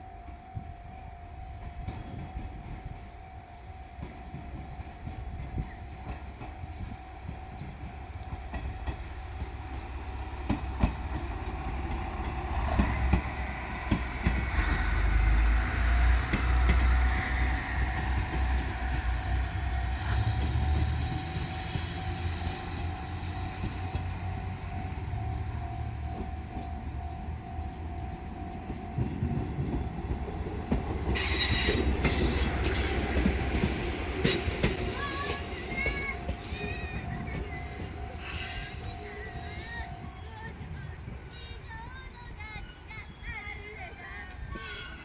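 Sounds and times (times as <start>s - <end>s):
diesel railcar engine rumble: 0.0s - 45.0s
wheels clacking over rail joints: 28.1s - 45.0s.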